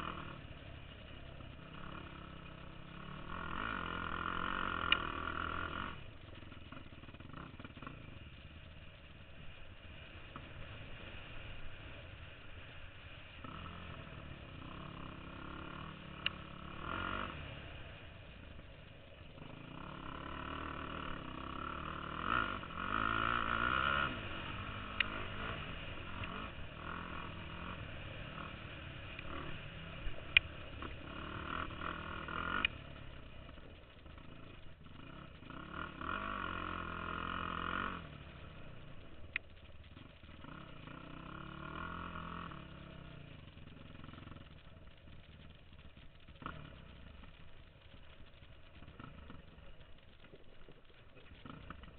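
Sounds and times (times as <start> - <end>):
quad bike engine revving: 0.0 - 51.9
sharp clicks: 38.9 - 40.4.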